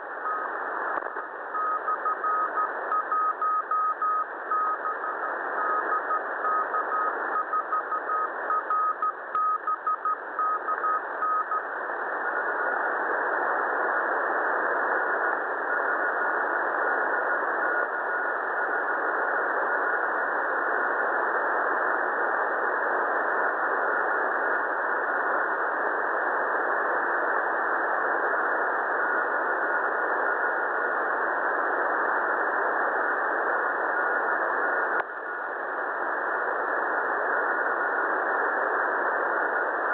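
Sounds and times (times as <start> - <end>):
radio static hiss: 0.0 - 39.9
faint higher-pitched morse signal: 1.5 - 11.6
morse code beeping: 1.6 - 4.9, 5.6 - 11.5.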